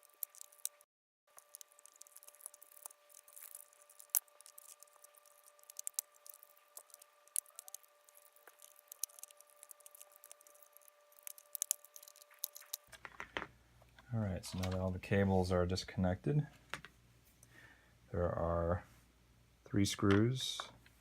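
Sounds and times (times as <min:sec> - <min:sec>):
plastic connectors clicking and scraping: 0:01.4 - 0:13.5.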